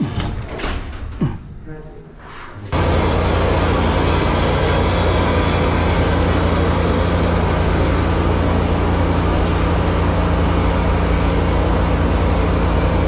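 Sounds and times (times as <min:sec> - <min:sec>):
constant low hum: 0:00.0 - 0:13.0
drain-jetting machine droning: 0:02.8 - 0:13.0.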